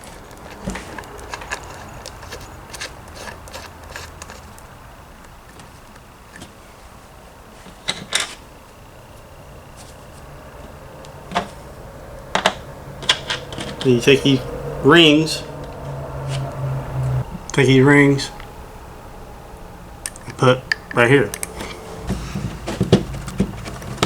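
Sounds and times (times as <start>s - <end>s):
plastic and metal hardware clinking: 0.0s - 6.5s, 20.0s - 24.0s.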